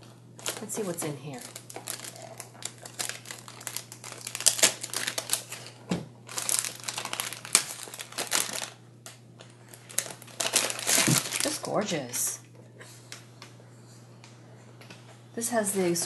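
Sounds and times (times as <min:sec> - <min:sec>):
paper and cardboard rustling: 0:06.3 - 0:08.7, 0:09.9 - 0:11.6.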